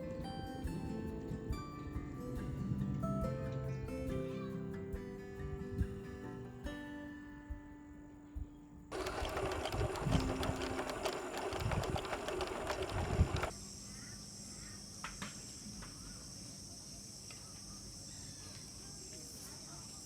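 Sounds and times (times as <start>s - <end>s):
insects trilling: 0.0s - 20.0s
faint bird chirps: 13.7s - 20.0s.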